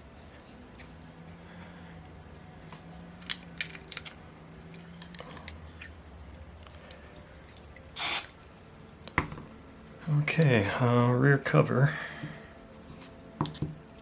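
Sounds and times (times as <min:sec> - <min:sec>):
low steady hum: 0:00.0 - 0:14.0
metal parts clicking: 0:03.2 - 0:04.2
short hiss: 0:08.0 - 0:08.4.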